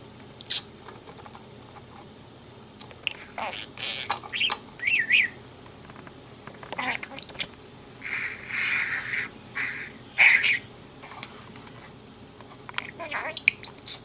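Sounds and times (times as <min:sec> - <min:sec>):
budgerigar chattering: 0:03.1 - 0:05.4, 0:06.8 - 0:10.7
budgerigar whistled notes: 0:04.3 - 0:05.4.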